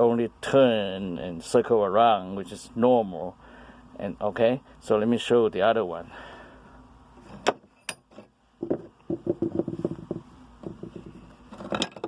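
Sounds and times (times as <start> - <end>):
metal parts rattling knocks: 7.3 - 12.0.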